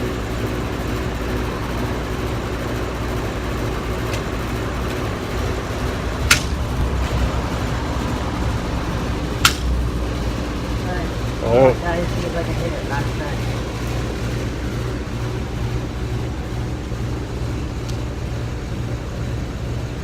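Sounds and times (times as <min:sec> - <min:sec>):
steady low rumble: 0:02.4 - 0:20.0
pellet gun firing: 0:06.2 - 0:06.6, 0:09.4 - 0:09.8.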